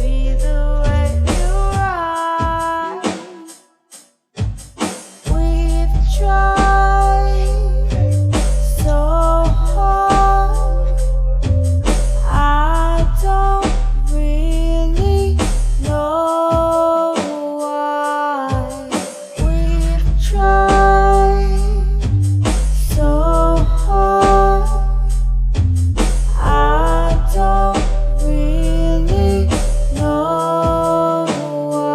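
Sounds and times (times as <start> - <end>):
heavy bass: 0.0 - 1.9, 5.3 - 16.0, 19.4 - 30.9
drum beat: 0.8 - 3.6, 4.4 - 7.0, 7.9 - 10.6, 15.0 - 17.7, 18.4 - 21.0, 25.8 - 31.9.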